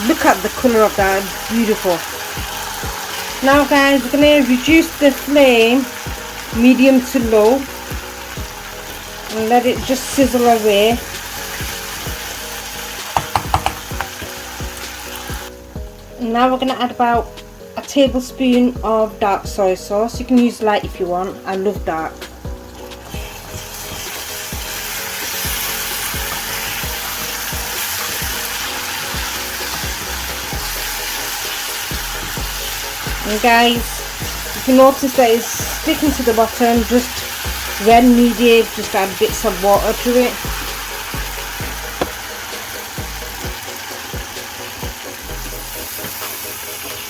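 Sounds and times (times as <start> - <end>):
sauce sizzling in a hot pan: 0.0 - 20.8, 21.9 - 47.0
soft knocks: 13.2 - 14.2.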